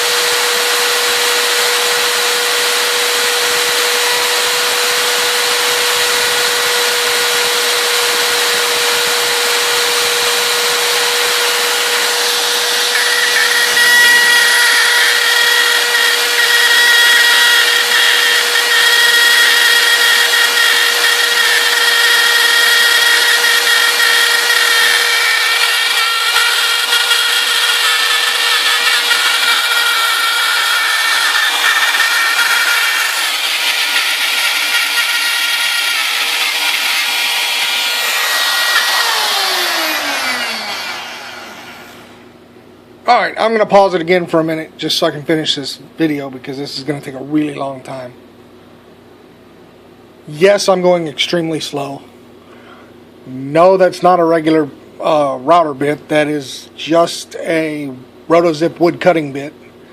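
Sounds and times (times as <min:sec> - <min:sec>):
spiral saw whining through plastic: 0:00.0 - 0:42.2.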